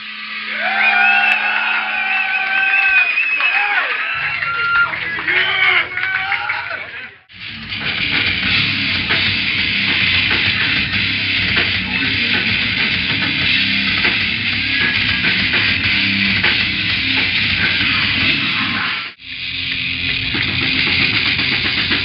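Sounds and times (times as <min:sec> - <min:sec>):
death metal band playing live: 0:07.3 - 0:22.0.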